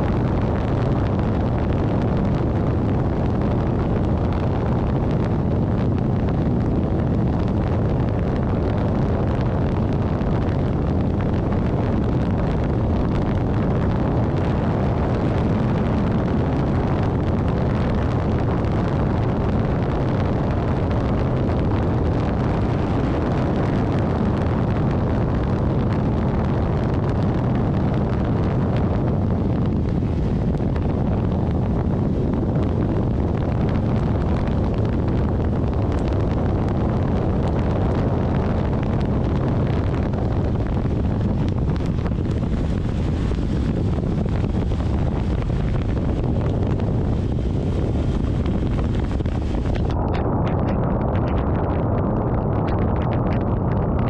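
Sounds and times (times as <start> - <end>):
vehicle on wet road: 0.0 - 54.0
wind buffeting microphone: 0.0 - 54.0.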